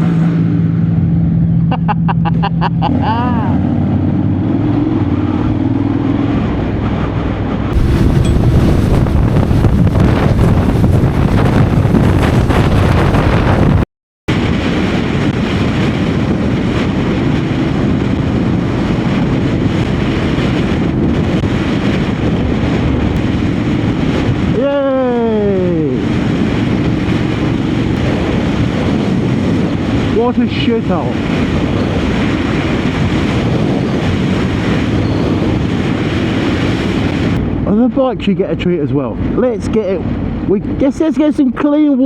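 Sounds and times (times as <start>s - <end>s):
wind rush on microphone: 0.0s - 42.0s
motorcycle engine running: 7.8s - 13.8s.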